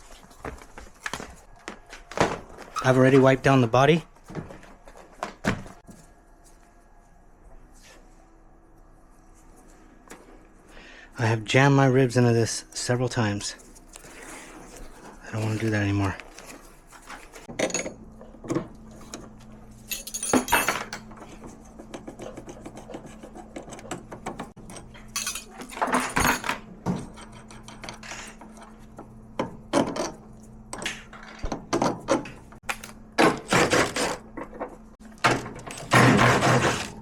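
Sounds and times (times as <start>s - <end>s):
metal hand tools clinking: 24.8s - 26.4s.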